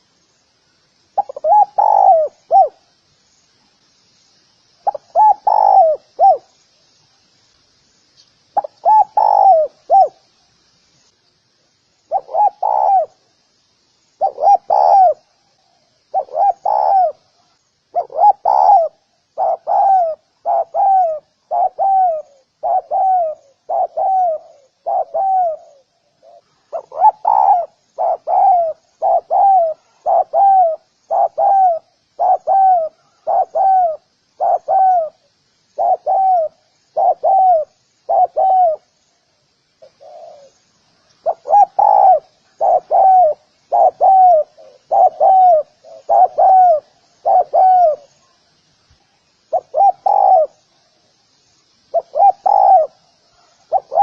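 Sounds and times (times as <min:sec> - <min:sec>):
dove cooing: 0:01.2 - 0:02.9, 0:04.8 - 0:06.5, 0:08.6 - 0:10.2, 0:12.1 - 0:13.2, 0:14.2 - 0:15.3, 0:16.1 - 0:17.3, 0:17.9 - 0:38.9, 0:39.8 - 0:40.6, 0:41.2 - 0:48.4, 0:49.5 - 0:50.6, 0:51.9 - 0:54.0.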